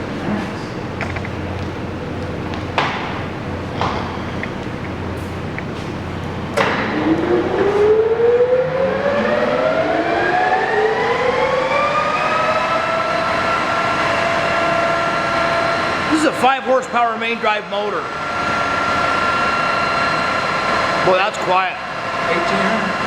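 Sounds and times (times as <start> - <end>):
lathe headstock whine: 17.7 - 23.0.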